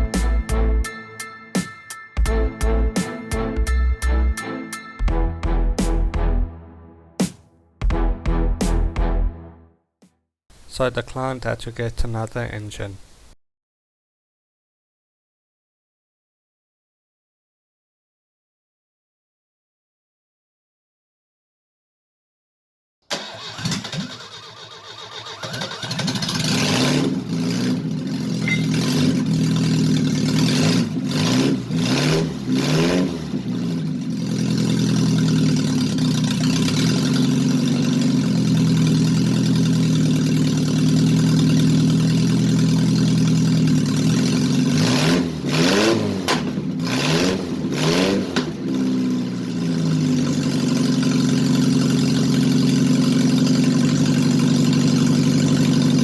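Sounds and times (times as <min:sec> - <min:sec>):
engine idling and revving: 0:00.0 - 0:00.9, 0:23.2 - 0:56.0.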